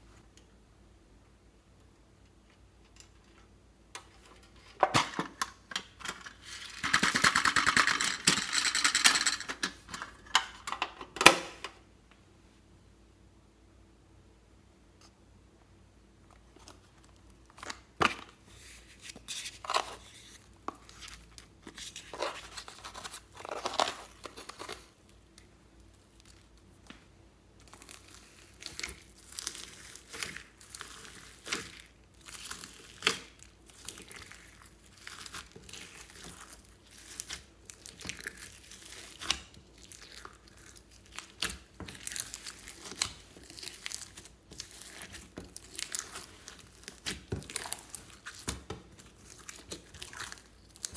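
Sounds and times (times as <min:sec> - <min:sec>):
slime crackling and tearing: 0:27.6 - 0:50.9.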